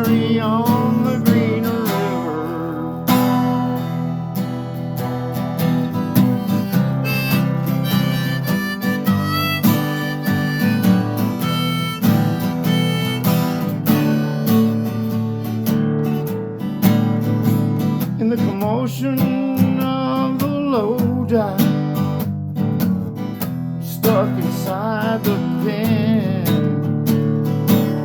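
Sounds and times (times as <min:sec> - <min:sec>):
strummed acoustic guitar: 0:00.0 - 0:28.0
harmonica solo: 0:06.1 - 0:14.8.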